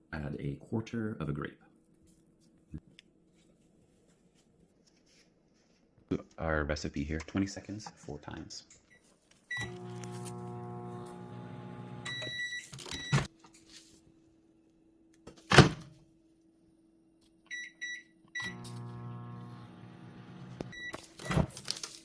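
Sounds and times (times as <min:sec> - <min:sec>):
microwave beeps: 0:09.5 - 0:13.3, 0:17.5 - 0:21.5
microwave humming: 0:09.5 - 0:13.3, 0:18.4 - 0:21.5
keypad beeps: 0:12.0 - 0:13.3.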